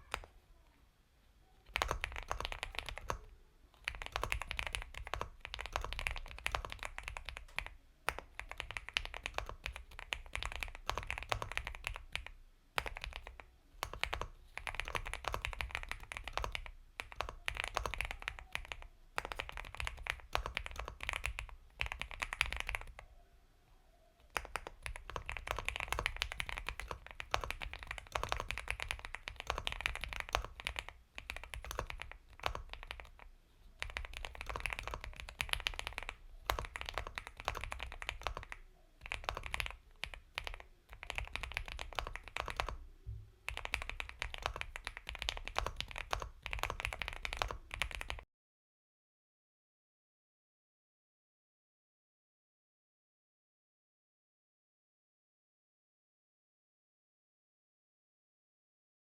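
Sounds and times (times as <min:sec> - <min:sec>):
mechanical keyboard typing: 0:00.0 - 0:00.3, 0:01.7 - 0:23.0, 0:24.2 - 0:42.8, 0:43.5 - 0:48.2.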